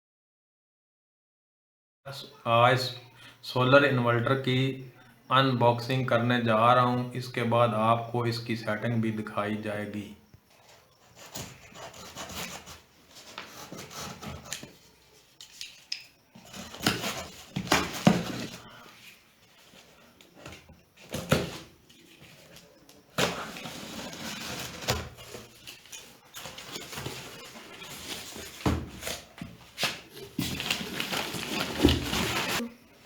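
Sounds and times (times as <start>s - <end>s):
cardboard packaging rustling: 10.6s - 32.8s.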